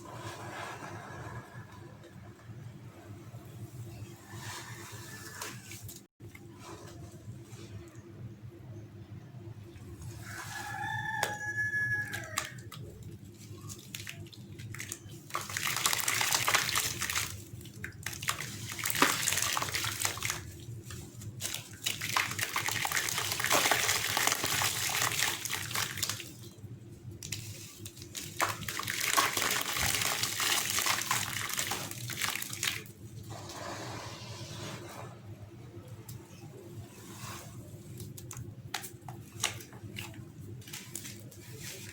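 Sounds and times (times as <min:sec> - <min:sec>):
chunks crumbling and fizzing in water: 0:10.2 - 0:33.1, 0:37.8 - 0:41.9.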